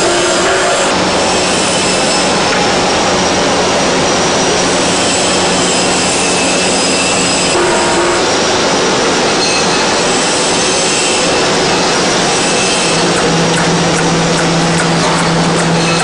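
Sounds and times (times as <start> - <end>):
machine whir and hiss: 0.0 - 16.0
constant low hum: 12.9 - 16.0.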